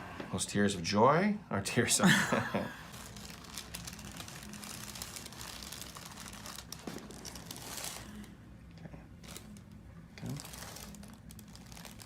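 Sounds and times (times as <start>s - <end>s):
crinkling rustling with crackles: 2.8s - 12.0s.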